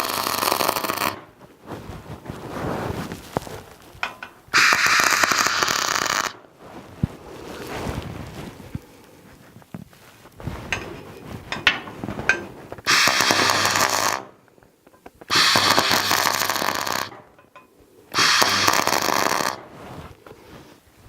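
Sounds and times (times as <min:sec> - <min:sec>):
arc welding crackling sizzle: 0:00.0 - 0:01.3, 0:04.5 - 0:06.4, 0:12.8 - 0:14.4, 0:15.2 - 0:17.2, 0:18.2 - 0:19.8
welder low hum: 0:00.0 - 0:01.3, 0:04.6 - 0:06.4, 0:12.9 - 0:14.4, 0:15.3 - 0:17.2, 0:18.1 - 0:19.7
metal clicks and knocks: 0:04.0 - 0:04.5, 0:10.7 - 0:12.6, 0:17.1 - 0:17.8.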